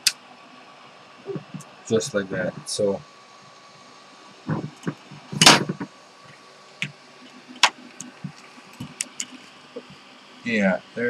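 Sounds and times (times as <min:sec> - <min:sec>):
sharp clicks: 0:07.6 - 0:09.9.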